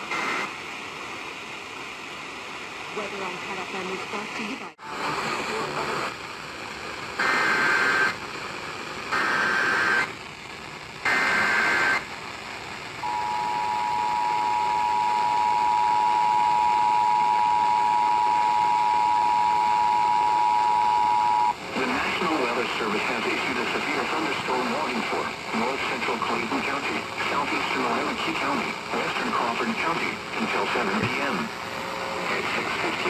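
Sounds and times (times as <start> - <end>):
harsh buzzing data bursts: 7.2 - 8.2, 11.0 - 12.1
two-tone attention signal: 13.0 - 21.5.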